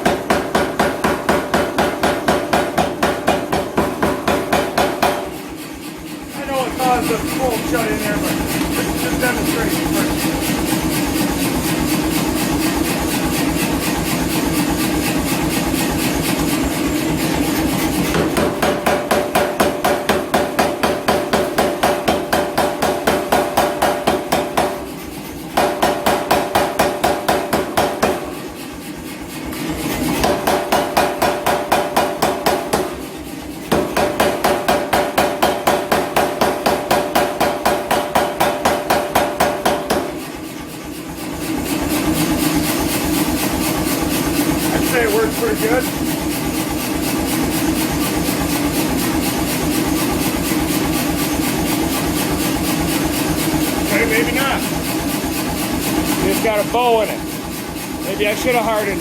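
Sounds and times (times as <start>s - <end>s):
power hammer pounding: 0.0s - 59.0s.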